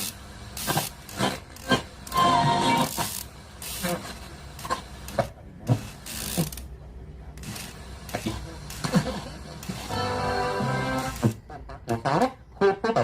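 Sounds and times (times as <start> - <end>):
radio static hiss and clicks: 0.0 - 2.0, 2.6 - 6.6, 7.4 - 10.0, 10.6 - 12.1.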